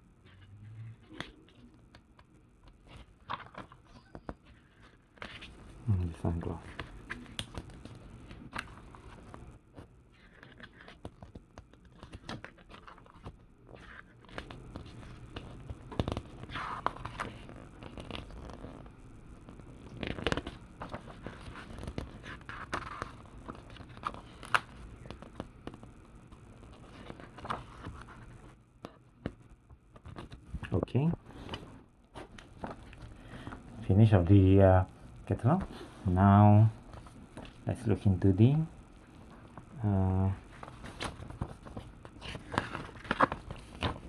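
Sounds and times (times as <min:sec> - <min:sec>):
glossy paper pages turning: 0:02.6 - 0:18.9, 0:19.5 - 0:28.6, 0:29.2 - 0:30.7, 0:31.3 - 0:33.6, 0:40.4 - 0:44.0.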